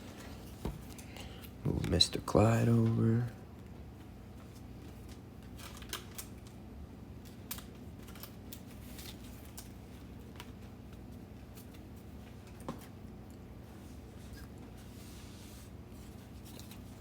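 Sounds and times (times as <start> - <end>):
low electrical hum: 0.0 - 17.0
cards clicking and rustling: 4.8 - 6.6, 7.2 - 13.0.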